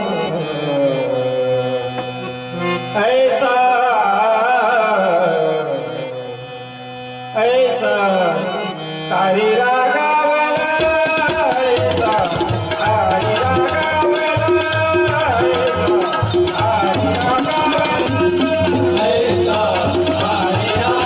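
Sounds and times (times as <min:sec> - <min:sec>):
tabla: 0:00.0 - 0:21.0
rattling percussion: 0:10.6 - 0:21.0.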